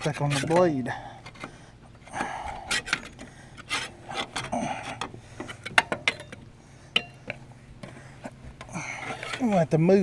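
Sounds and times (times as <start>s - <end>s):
scraper scraping grass off metal: 0.0s - 0.7s, 3.6s - 4.5s.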